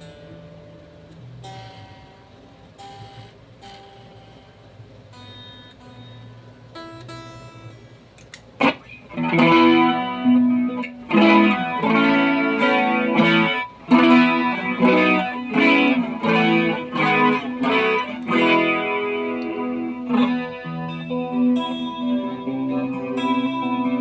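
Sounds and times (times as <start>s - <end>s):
electric guitar with effects: 0.0s - 24.0s.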